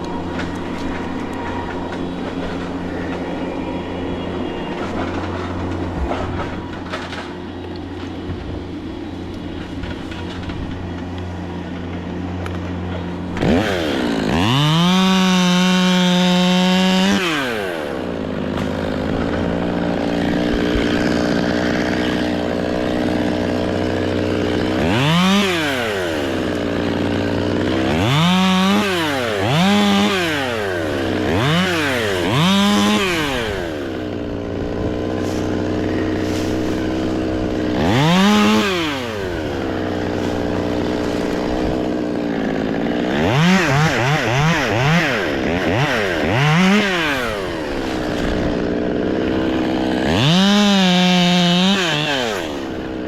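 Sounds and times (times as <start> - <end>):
engine running steadily: 0.0 - 14.4, 33.3 - 43.2
chainsaw revving and idling: 0.0 - 53.0.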